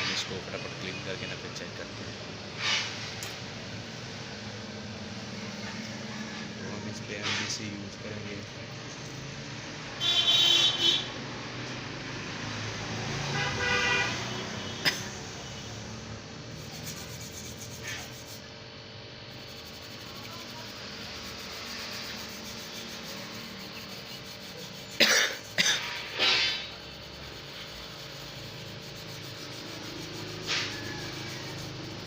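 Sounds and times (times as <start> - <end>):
street traffic: 0.0 - 32.0
vehicle horn tooting: 10.0 - 11.1, 13.2 - 15.8
brush scrubbing circuit board: 16.4 - 18.5, 19.3 - 32.0.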